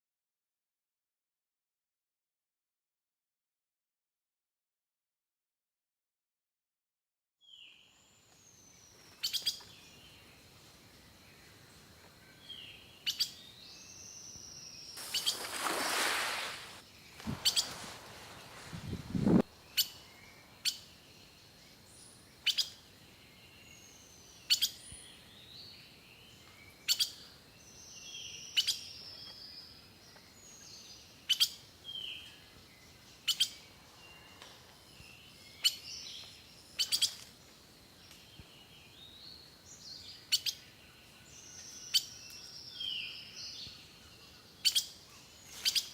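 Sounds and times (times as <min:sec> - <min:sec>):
brief rush of noise: 0:15.0 - 0:19.4
small birds calling: 0:15.0 - 0:22.8.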